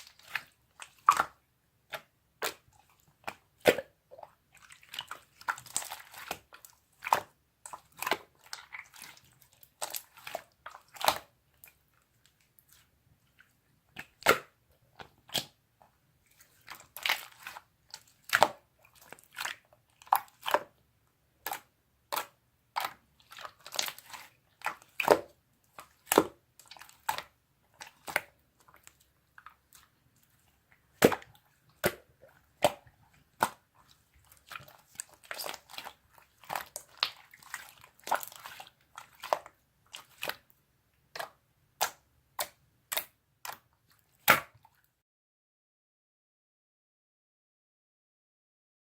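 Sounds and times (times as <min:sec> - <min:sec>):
slime squished by hand: 0:21.4 - 0:40.5.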